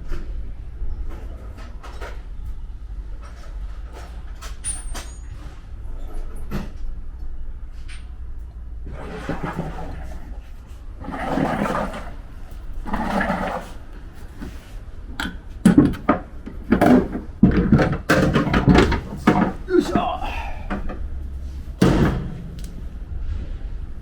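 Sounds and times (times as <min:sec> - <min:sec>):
low hum: 0:18.6 - 0:24.0.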